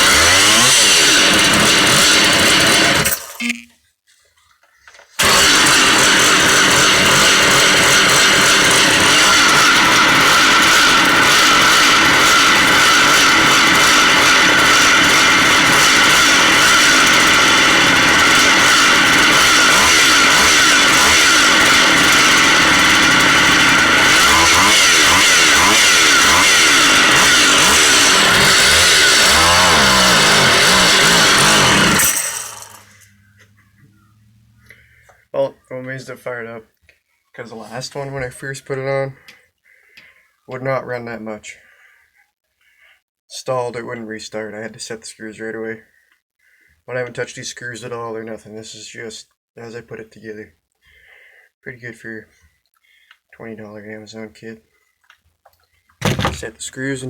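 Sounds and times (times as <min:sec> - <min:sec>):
chainsaw running: 0:00.0 - 0:03.6, 0:05.2 - 0:33.6, 0:56.0 - 0:56.6.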